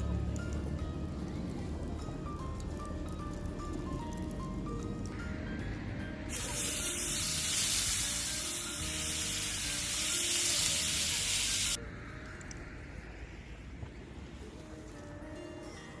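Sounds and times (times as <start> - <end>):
meat sizzling in a skillet: 6.3 - 11.8.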